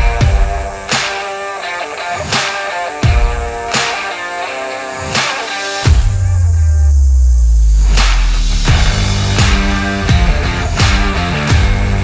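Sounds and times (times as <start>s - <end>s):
rock music: 0.0s - 6.3s, 8.7s - 12.0s.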